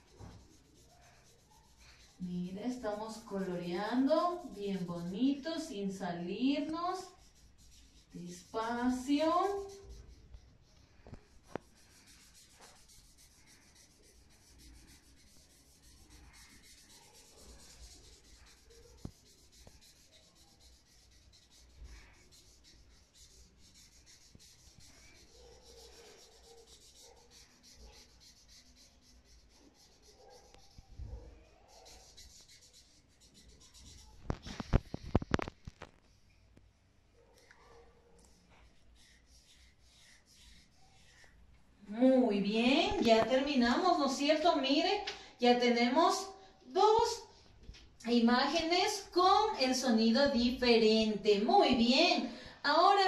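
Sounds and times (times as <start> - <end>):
crayon scratching on paper: 0.0 - 35.8, 38.2 - 41.4.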